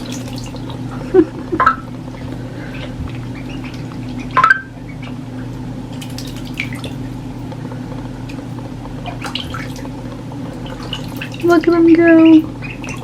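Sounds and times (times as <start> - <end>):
water drips and splashes: 0.0 - 1.0, 5.9 - 7.2, 9.0 - 13.0
steady low hum: 0.0 - 13.0.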